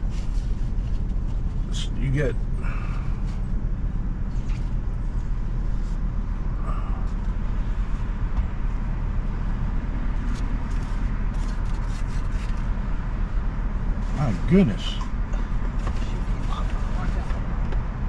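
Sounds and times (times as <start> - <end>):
car engine rumble inside cabin: 0.0 - 18.0.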